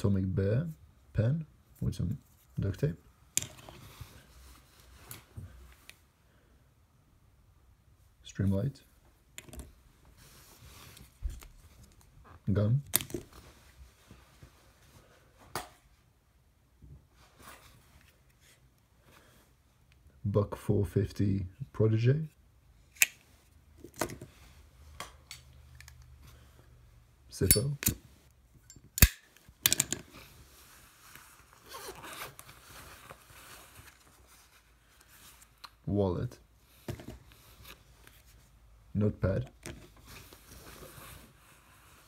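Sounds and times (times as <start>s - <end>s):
soft handling noises: 1.6s - 6.2s, 7.9s - 16.2s, 16.8s - 20.2s, 21.6s - 42.0s
zipper-like rustling: 30.6s - 34.6s.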